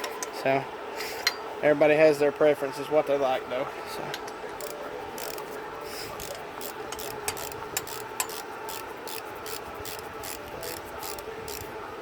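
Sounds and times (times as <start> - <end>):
hand tools clicking on bolts: 6.2 - 11.7.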